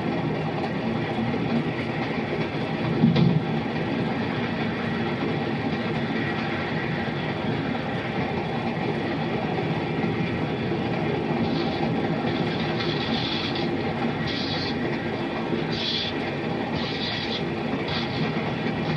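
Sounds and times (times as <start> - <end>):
train rumble and rattle: 0.0 - 18.9
film soundtrack hiss: 11.4 - 18.9.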